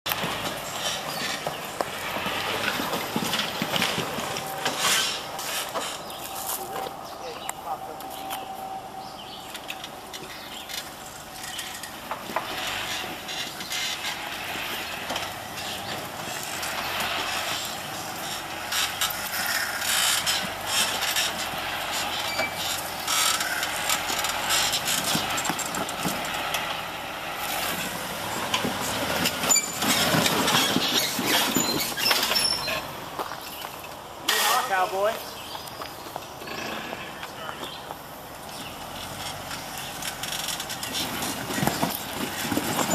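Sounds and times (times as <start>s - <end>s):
vehicle creaking and clanking: 0.0s - 42.9s
steady noisy background: 0.1s - 28.8s.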